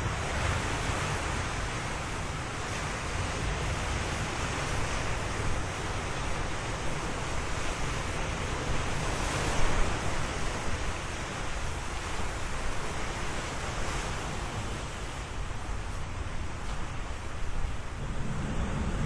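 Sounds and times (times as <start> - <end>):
ocean waves washing in: 0.0 - 19.0.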